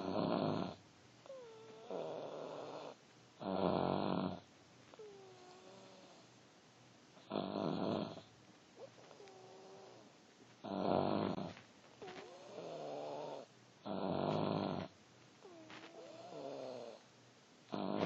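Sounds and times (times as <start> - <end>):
loud harsh snoring: 0.0 - 0.8, 1.8 - 4.4, 7.2 - 8.3, 10.6 - 11.6, 12.2 - 14.9, 16.0 - 17.0, 17.7 - 18.0.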